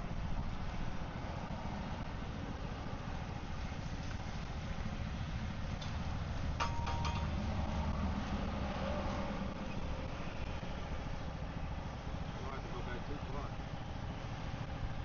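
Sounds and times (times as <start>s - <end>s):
brief metallic ring: 6.6s - 7.5s.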